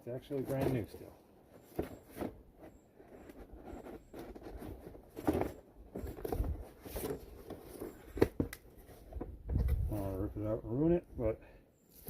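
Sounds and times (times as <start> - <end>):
box rustling and knocking: 0.4 - 9.9.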